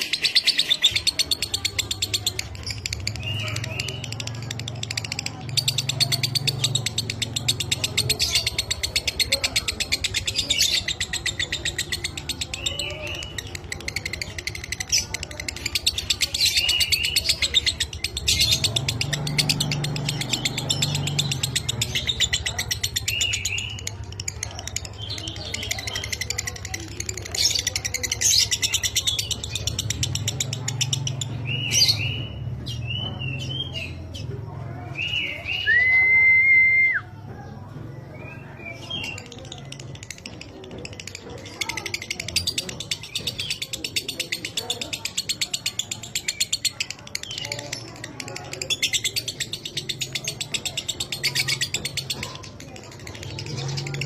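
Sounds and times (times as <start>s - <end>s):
bird chattering trill: 0.0s - 35.8s, 38.3s - 54.0s.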